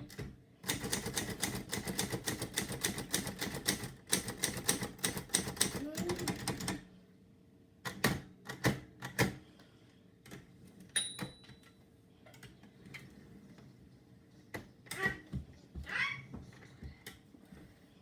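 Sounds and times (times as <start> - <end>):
typewriter bell ding: 11.0 - 11.6.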